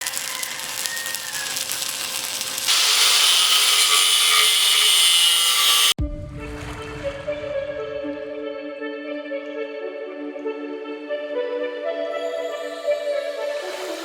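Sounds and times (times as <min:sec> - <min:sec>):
welding arc crackling and hissing: 0:00.0 - 0:06.0
music: 0:06.0 - 0:14.0.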